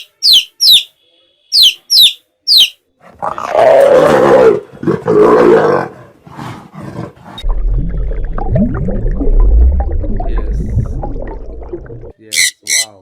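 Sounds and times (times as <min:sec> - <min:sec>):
large animal roaring: 0:03.1 - 0:07.5.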